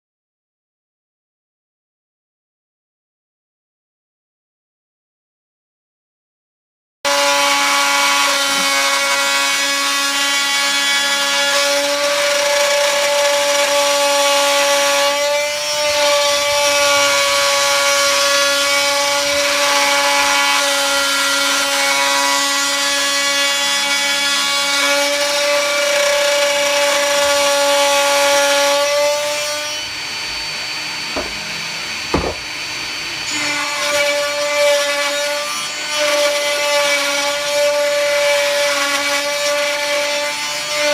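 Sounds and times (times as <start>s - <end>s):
router bit cutting wood: 7.1s - 40.9s
short knocks: 31.2s - 31.4s, 32.1s - 32.5s.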